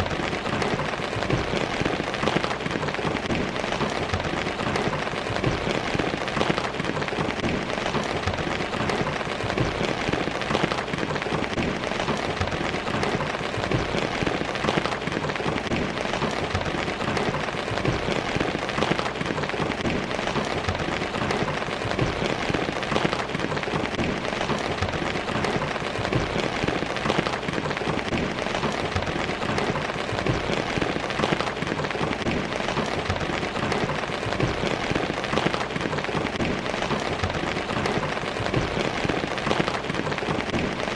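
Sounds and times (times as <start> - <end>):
heavy rain on hard surfaces: 0.0 - 40.9.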